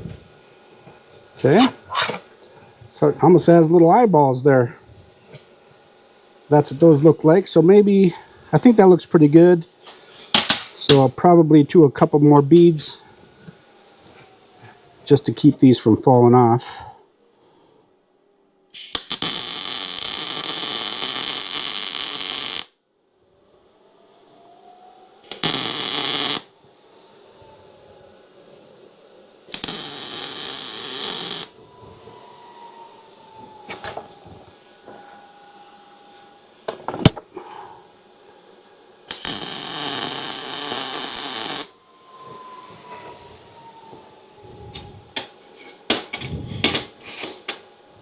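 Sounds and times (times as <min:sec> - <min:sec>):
welding arc pops: 0:18.7 - 0:22.7, 0:25.2 - 0:26.5, 0:29.5 - 0:31.5, 0:39.1 - 0:41.7
welding arc crackling: 0:18.8 - 0:22.7, 0:25.2 - 0:26.5, 0:29.5 - 0:31.6, 0:39.1 - 0:41.7.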